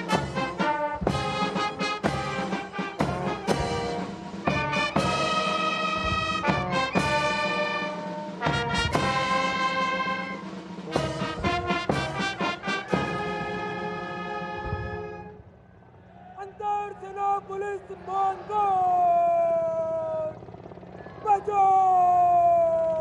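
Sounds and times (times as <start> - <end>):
brass band playing: 0.0 - 15.5.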